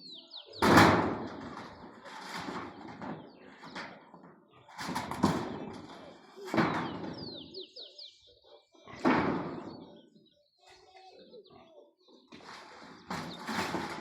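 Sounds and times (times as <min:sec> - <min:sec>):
bird chirping: 0:00.0 - 0:00.7, 0:05.7 - 0:14.0
loud thud: 0:00.6 - 0:01.9, 0:09.0 - 0:09.8.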